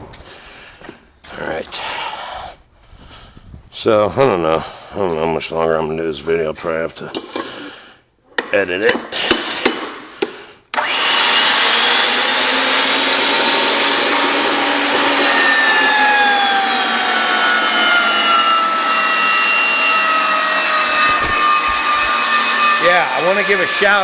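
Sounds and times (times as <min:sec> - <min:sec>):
motor machine whirring: 0:10.8 - 0:24.0.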